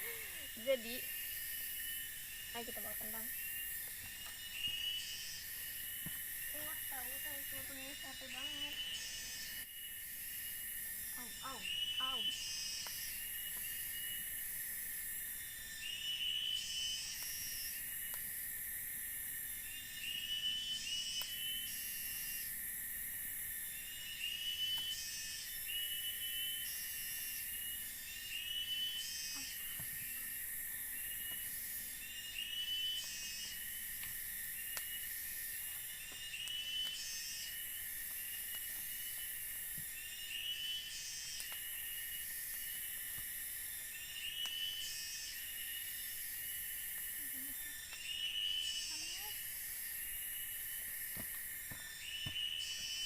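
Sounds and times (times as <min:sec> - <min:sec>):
shrill insect buzzing: 0:00.0 - 0:15.4, 0:24.8 - 0:43.5, 0:44.7 - 0:53.0
insects high whine: 0:00.0 - 0:53.0.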